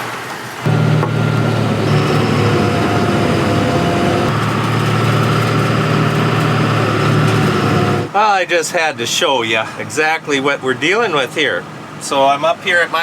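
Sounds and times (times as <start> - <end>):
vehicle engine running: 0.7 - 8.1.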